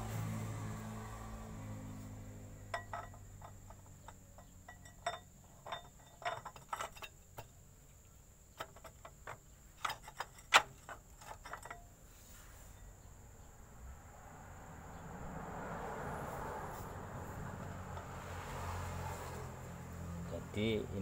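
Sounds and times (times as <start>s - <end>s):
metal parts clinking: 2.7s - 7.6s, 8.6s - 11.9s.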